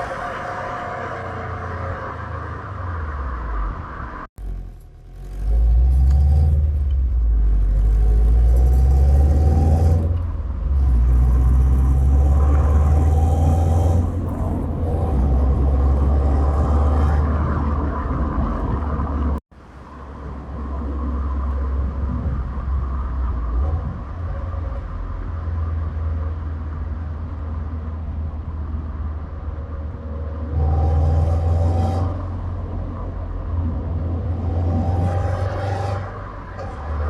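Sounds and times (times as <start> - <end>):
car engine rumbling: 0.0 - 37.0.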